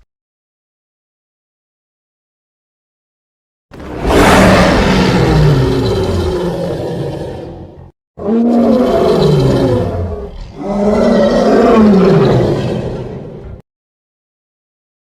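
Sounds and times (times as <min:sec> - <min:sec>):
big cat roaring: 0:03.8 - 0:13.6.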